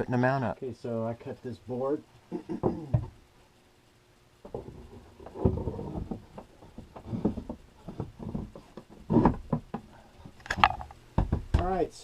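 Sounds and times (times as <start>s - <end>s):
wooden board knocking: 10.6s - 11.8s.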